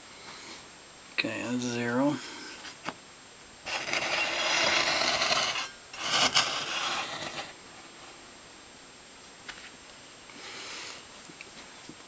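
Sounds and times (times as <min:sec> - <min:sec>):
scraping on table saw: 0:03.7 - 0:07.6.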